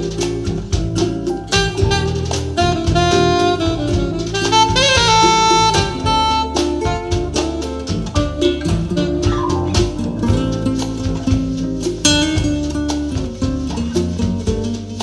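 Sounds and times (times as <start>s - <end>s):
bass: 0.0s - 15.0s
drums: 0.0s - 15.0s
saxophone lead: 1.5s - 7.6s.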